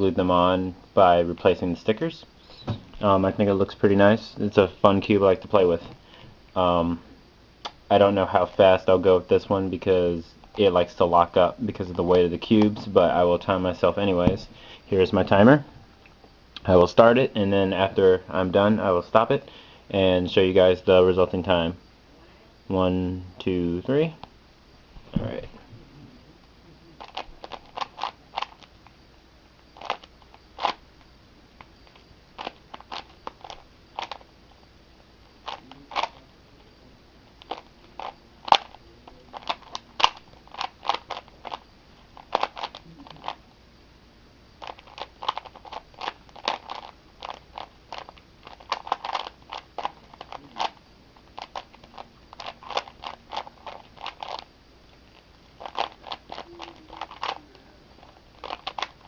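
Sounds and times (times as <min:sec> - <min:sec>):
puzzle cube plastic clicks: 0:27.0 - 0:28.7, 0:29.8 - 0:30.8, 0:31.6 - 0:34.3, 0:35.4 - 0:36.2, 0:37.4 - 0:41.6, 0:42.2 - 0:43.4, 0:44.6 - 0:54.5, 0:55.3 - 0:59.0.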